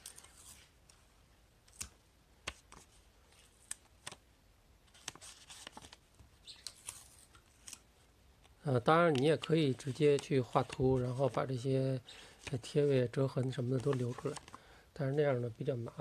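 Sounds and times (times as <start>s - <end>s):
paper rustling: 4.9s - 11.7s, 12.3s - 14.6s.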